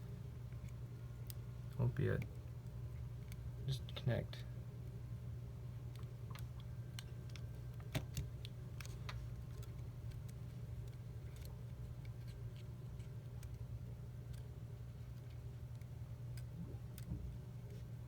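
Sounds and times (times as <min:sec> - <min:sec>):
steady low hum: 0:00.0 - 0:18.0
small tools clicking on phone parts: 0:05.9 - 0:17.8.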